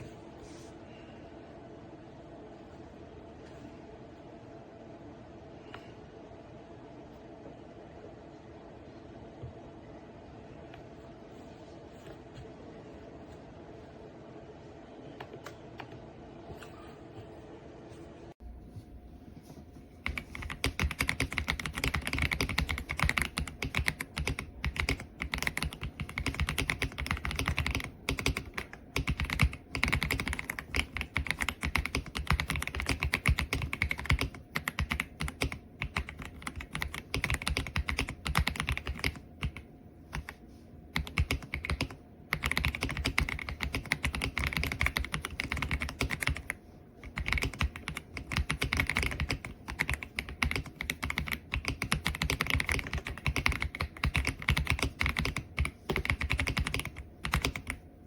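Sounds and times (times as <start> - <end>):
mechanical keyboard typing: 20.0 - 40.3, 40.9 - 57.8.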